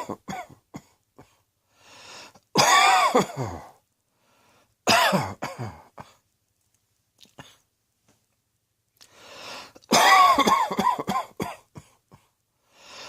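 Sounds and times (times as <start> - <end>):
person coughing: 0.0 - 1.4, 2.6 - 3.8, 4.9 - 6.2, 9.8 - 12.4
breath in: 1.7 - 2.4, 4.1 - 4.8, 9.0 - 9.9, 12.6 - 13.0.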